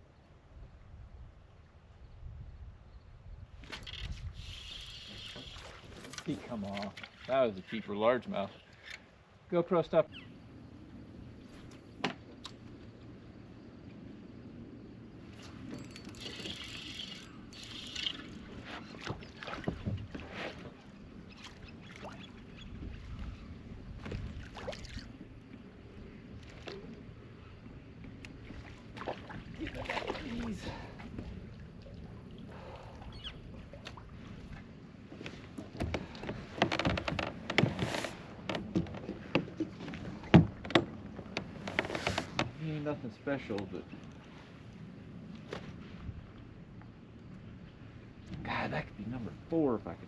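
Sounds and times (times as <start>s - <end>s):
fishing gear knocking and rustling: 15.4s - 18.4s, 35.1s - 42.6s.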